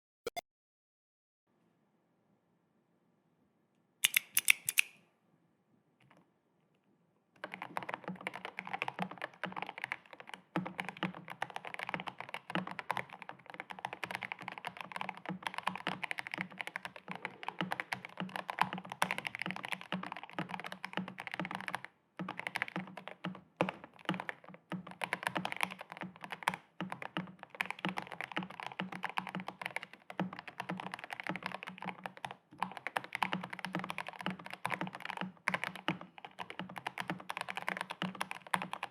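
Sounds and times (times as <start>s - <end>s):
fast typing on mechanical keyboard: 4.0s - 4.9s, 7.4s - 38.9s
sharp click: 4.0s - 5.0s.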